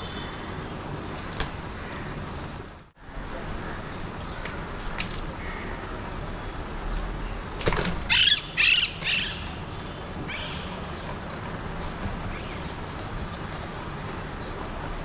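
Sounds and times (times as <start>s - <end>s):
parakeets screeching: 8.0s - 9.7s.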